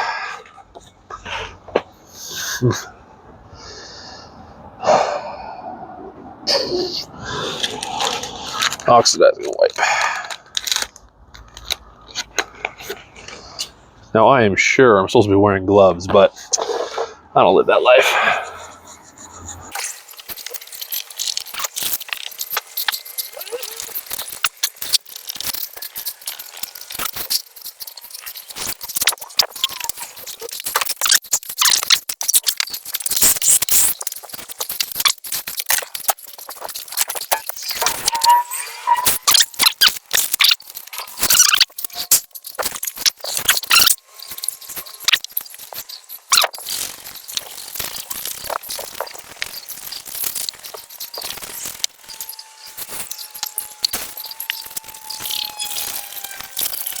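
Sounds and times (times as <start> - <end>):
scratchy rubbing on plastic lens: 18.4 - 57.0.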